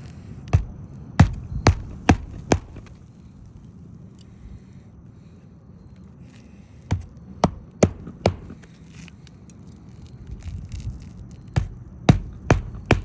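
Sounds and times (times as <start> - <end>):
hammer striking nails: 0.5 - 3.0, 6.9 - 8.7, 11.6 - 13.0.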